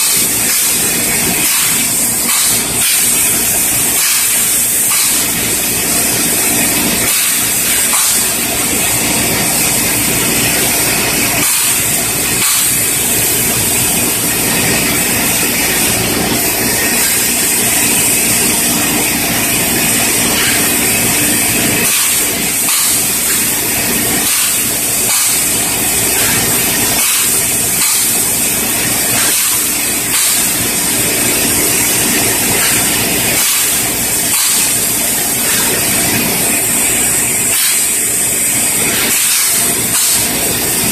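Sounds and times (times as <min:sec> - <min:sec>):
paint spray gun hissing: 0:00.0 - 0:40.9.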